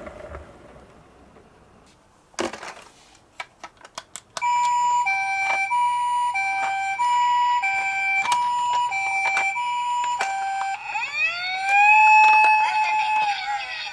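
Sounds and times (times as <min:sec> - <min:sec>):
toy siren hi-lo wail: 0:04.4 - 0:13.9.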